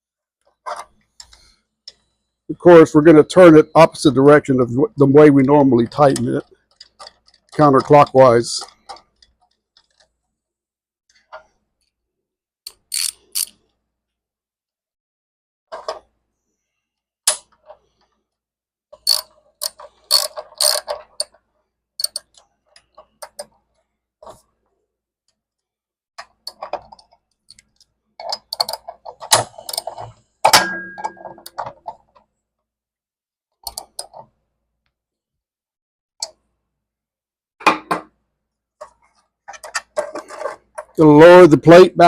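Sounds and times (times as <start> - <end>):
wrench clicking and clattering: 12.7 - 13.6, 19.0 - 21.4, 22.0 - 22.4
metal clank ringing: 30.5 - 31.4.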